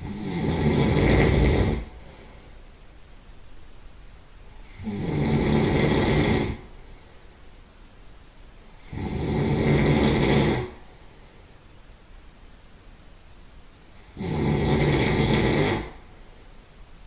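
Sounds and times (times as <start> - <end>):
loud nasal snoring: 0.0 - 2.2, 4.6 - 6.7, 8.7 - 10.9, 14.0 - 16.1.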